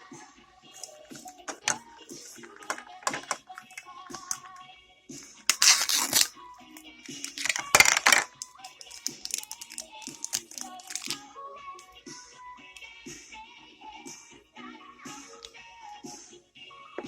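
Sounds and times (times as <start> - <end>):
light music: 0.0 - 17.0
packaging crinkling: 5.5 - 6.3, 7.2 - 11.2.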